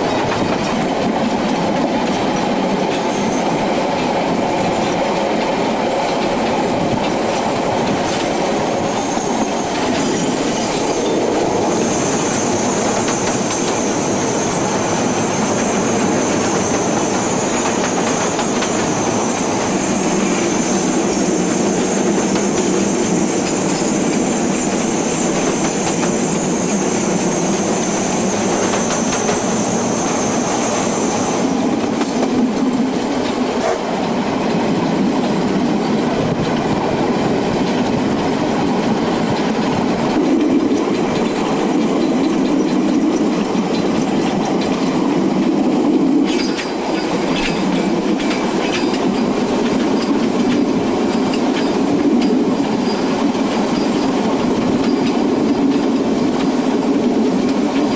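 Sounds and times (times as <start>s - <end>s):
train wheels clattering on rails: 0.0s - 57.9s
high hiss: 8.2s - 32.0s.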